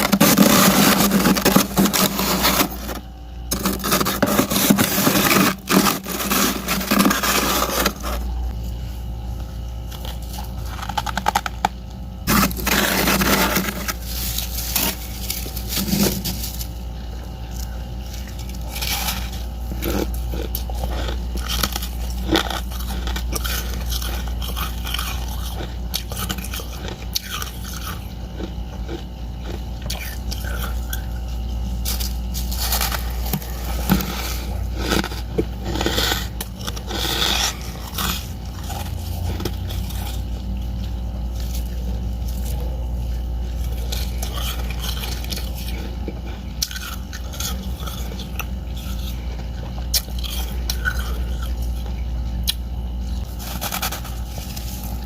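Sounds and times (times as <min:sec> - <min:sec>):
crunching frost: 0:00.0 - 0:08.8, 0:12.2 - 0:55.0
steady low hum: 0:00.0 - 0:55.0.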